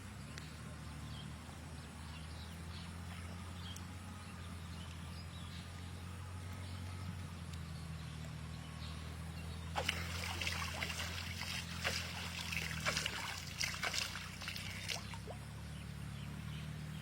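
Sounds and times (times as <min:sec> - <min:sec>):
steady low hum: 0:00.0 - 0:17.0
water splashing and dripping: 0:09.7 - 0:15.6.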